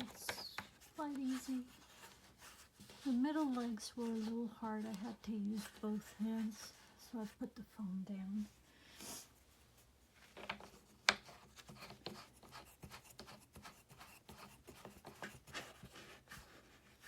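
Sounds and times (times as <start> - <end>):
plastic rubbing scrapes: 0.0 - 6.8.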